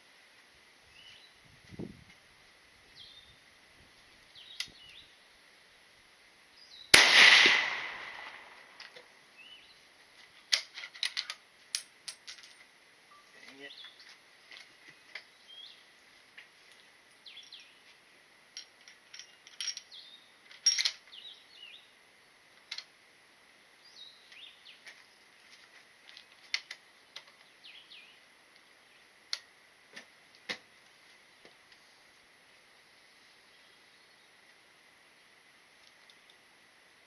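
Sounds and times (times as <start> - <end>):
birds chirping: 0.9 - 1.4, 2.8 - 5.4, 7.8 - 10.6, 13.1 - 16.3, 17.1 - 17.9, 23.8 - 25.4, 26.4 - 29.1.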